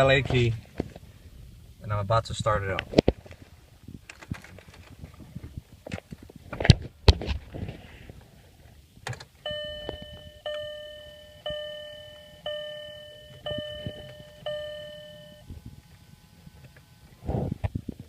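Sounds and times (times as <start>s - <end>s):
dashboard warning chime: 9.4s - 17.1s.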